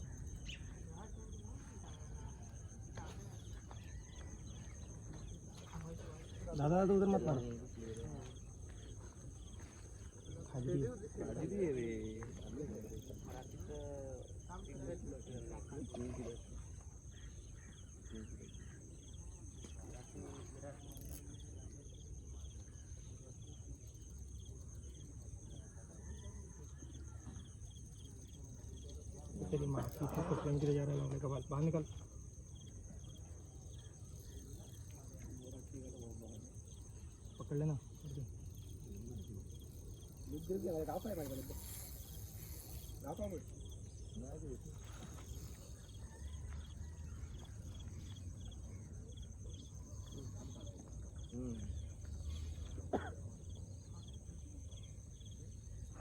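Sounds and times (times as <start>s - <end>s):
crickets chirping: 0.0s - 56.0s
high-pitched insect buzz: 18.6s - 21.7s, 27.3s - 50.2s.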